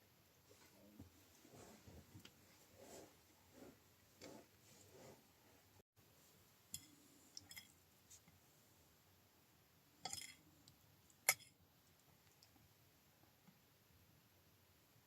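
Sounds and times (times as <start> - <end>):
small clicks and clinks: 6.7 - 7.8, 10.0 - 12.6.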